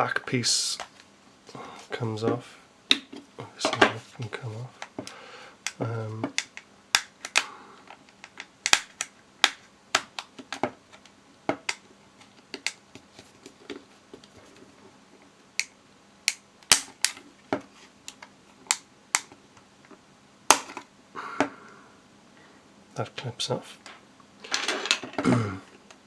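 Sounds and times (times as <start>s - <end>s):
plastic clicks and snaps: 4.8s - 12.8s, 15.6s - 17.2s, 18.0s - 20.9s.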